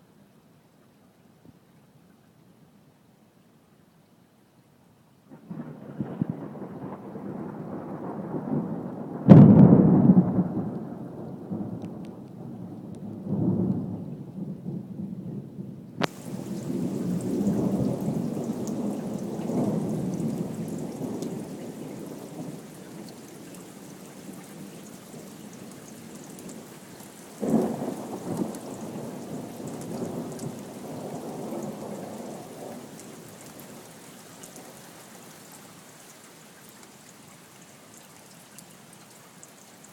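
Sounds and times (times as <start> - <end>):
rain hiss: 5.1 - 14.8, 15.9 - 39.9
thunder clap and rumble: 5.4 - 22.7.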